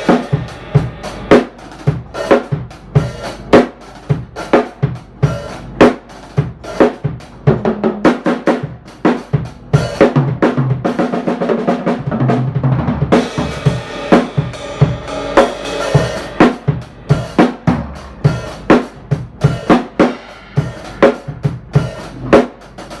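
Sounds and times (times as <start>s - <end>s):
cymbal wash: 0.0s - 4.5s, 13.2s - 22.9s.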